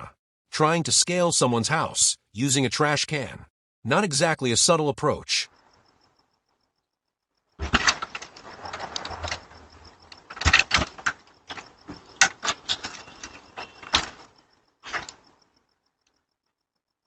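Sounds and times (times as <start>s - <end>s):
trash can knocks and scrapes: 7.6s - 15.2s.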